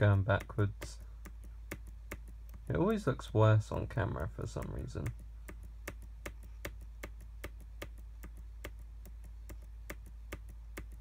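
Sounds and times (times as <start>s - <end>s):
low steady hum: 0.0s - 11.0s
keyboard keys clicking: 4.4s - 11.0s.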